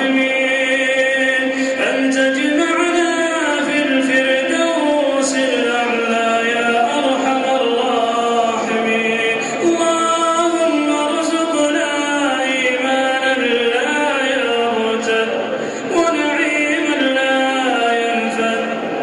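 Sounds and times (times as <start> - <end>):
melodic vocal chanting: 0.0 - 19.0.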